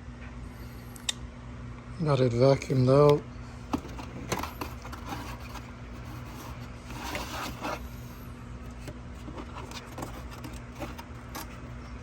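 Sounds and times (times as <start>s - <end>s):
steady low hum: 0.0s - 12.0s
plastic rubbing and scraping: 3.7s - 8.0s, 8.7s - 12.0s.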